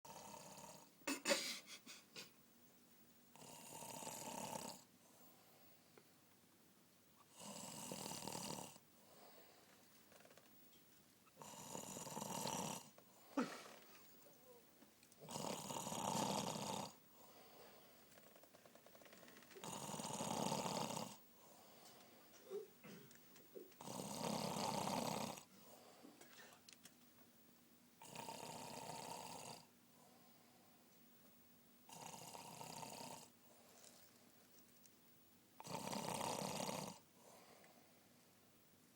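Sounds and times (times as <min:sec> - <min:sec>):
man snoring: 0:00.1 - 0:00.9, 0:03.4 - 0:04.9, 0:07.3 - 0:08.8, 0:11.4 - 0:13.7, 0:15.2 - 0:17.0, 0:19.6 - 0:21.2, 0:23.8 - 0:25.5, 0:28.0 - 0:29.7, 0:31.9 - 0:33.3, 0:35.6 - 0:37.0.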